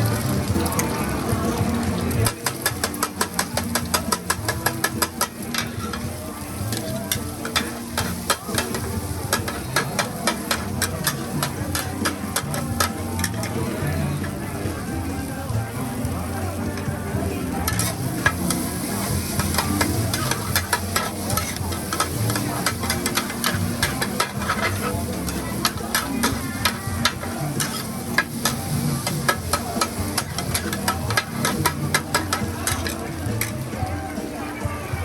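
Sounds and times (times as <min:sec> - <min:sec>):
food sizzling in a pan: 0:00.0 - 0:34.5
utensil clacking on pan: 0:02.2 - 0:13.8, 0:17.6 - 0:33.6.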